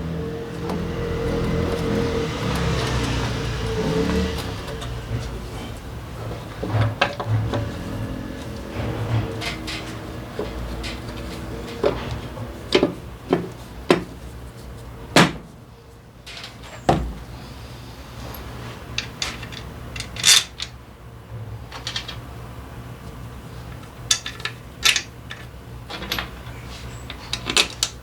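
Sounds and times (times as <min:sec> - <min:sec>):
metal tools clinking: 0:00.5 - 0:12.3, 0:19.0 - 0:20.8.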